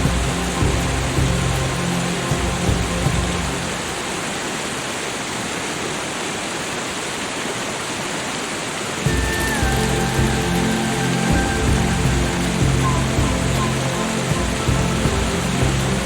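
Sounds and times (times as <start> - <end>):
soft ambient music: 0.0 - 5.2, 9.0 - 16.0
falling water hiss: 0.0 - 16.0.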